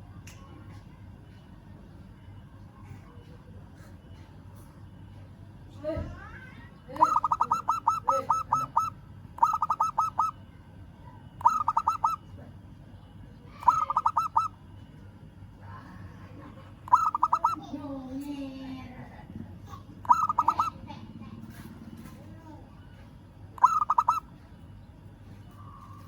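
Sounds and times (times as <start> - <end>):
dove cooing in staccato notes: 7.0 - 10.3, 11.4 - 12.2, 13.6 - 14.5, 16.9 - 17.7, 20.0 - 21.0, 23.6 - 24.2.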